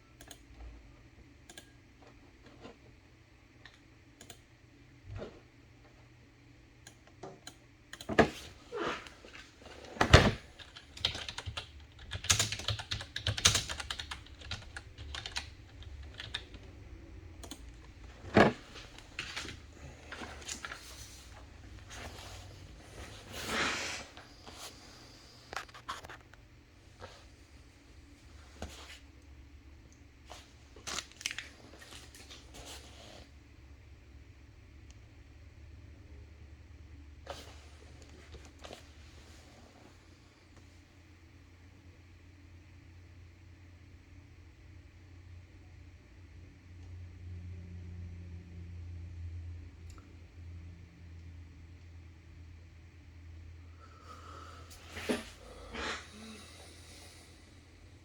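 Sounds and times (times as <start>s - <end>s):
typing on computer keyboard: 10.6s - 16.7s.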